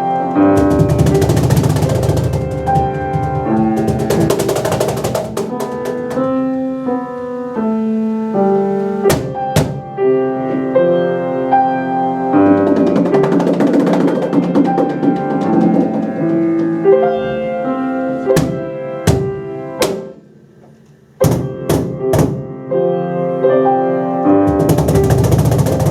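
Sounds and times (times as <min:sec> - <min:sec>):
piano playing: 0:00.0 - 0:25.9
fast percussion strikes: 0:00.6 - 0:06.4, 0:12.5 - 0:16.8, 0:24.5 - 0:25.9
sharp percussion hits: 0:00.6 - 0:06.4.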